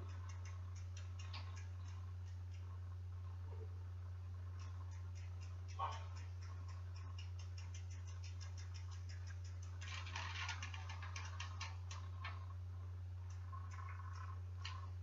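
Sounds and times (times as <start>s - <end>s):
bicycle freewheel ticking: 0.0s - 2.6s, 4.6s - 12.4s
steady low hum: 0.0s - 15.0s.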